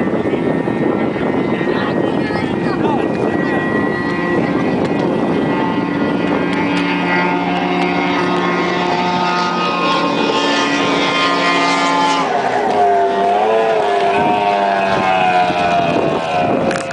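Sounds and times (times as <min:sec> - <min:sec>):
outboard motor at high speed: 0:00.0 - 0:16.9.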